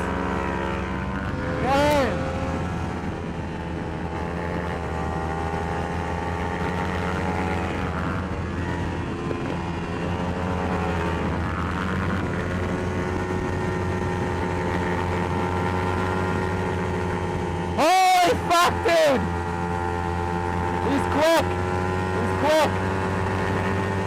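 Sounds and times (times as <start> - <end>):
motorcycle engine at high revs: 0.0 - 24.0
wind noise: 7.7 - 16.8.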